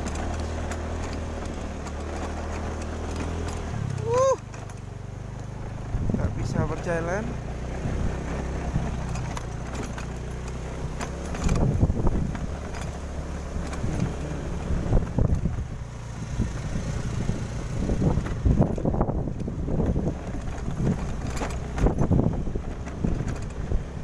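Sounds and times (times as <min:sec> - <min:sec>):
vehicle engine running: 0:00.0 - 0:24.0
wind buffeting microphone: 0:05.7 - 0:24.0.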